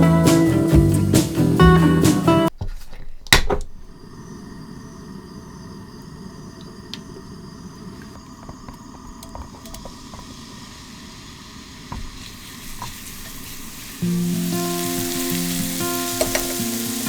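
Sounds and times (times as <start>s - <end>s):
food sizzling in a pan: 9.8s - 17.0s.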